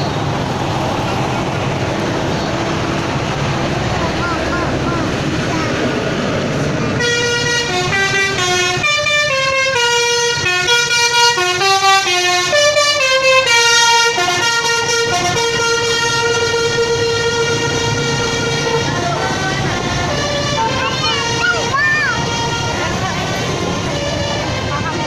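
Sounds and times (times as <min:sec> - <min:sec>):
musical air horn melody: 0:07.0 - 0:23.1.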